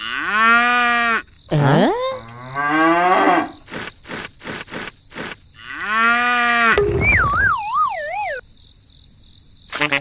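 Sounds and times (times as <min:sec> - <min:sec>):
cow mooing: 0:02.2 - 0:03.5.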